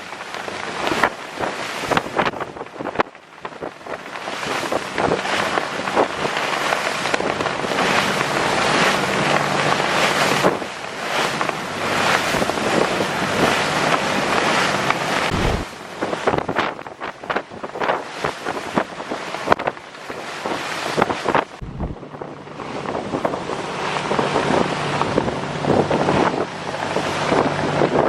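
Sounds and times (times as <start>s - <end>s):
sea water rushing: 0.0s - 16.3s
wind buffeting microphone: 0.5s - 28.0s.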